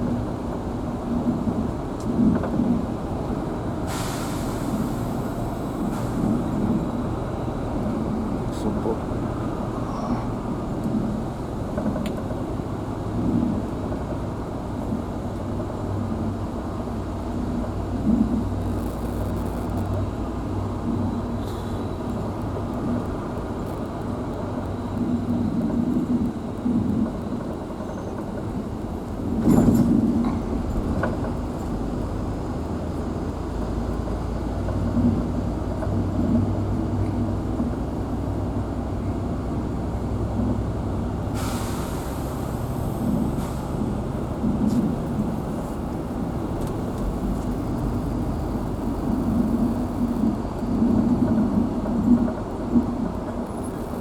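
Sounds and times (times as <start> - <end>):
road rumble: 0.0 - 54.0
vehicle engine humming: 42.0 - 54.0.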